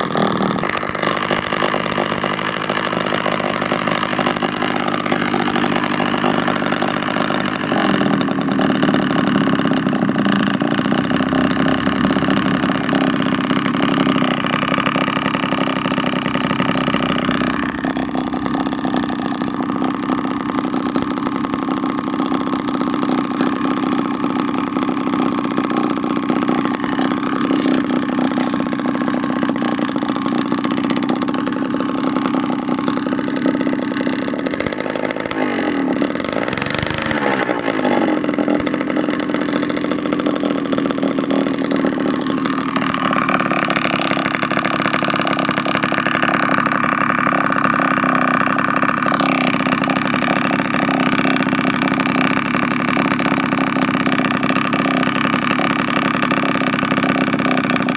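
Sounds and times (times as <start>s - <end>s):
small two-stroke engine running: 0.0s - 57.9s.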